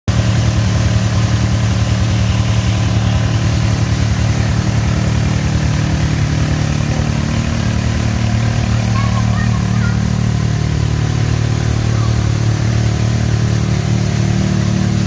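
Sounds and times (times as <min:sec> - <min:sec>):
vehicle engine idling: 0:00.1 - 0:15.0.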